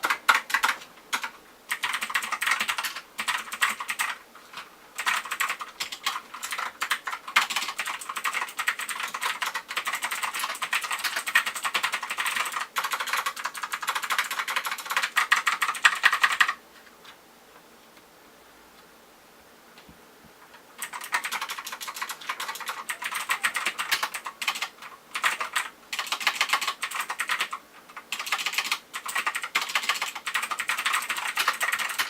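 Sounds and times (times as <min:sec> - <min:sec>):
mechanical keyboard typing: 0:00.0 - 0:16.6, 0:20.8 - 0:32.0.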